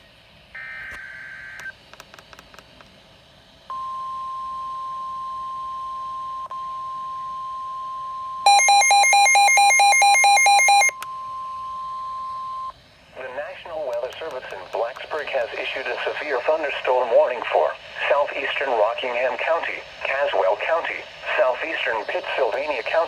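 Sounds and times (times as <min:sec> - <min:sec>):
fast electronic beeping: 0:08.5 - 0:10.9
digital data tones: 0:08.5 - 0:11.0
steady weather alert tone: 0:08.5 - 0:11.0, 0:13.1 - 0:23.0
clicks: 0:13.9 - 0:15.6.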